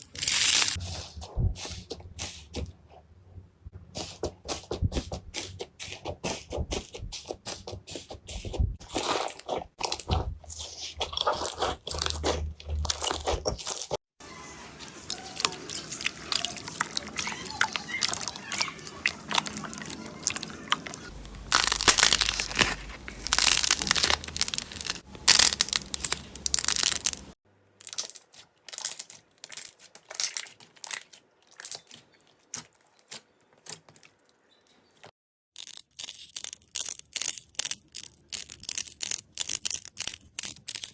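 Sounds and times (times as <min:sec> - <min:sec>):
slime crackling pops: 0:21.3 - 0:27.3.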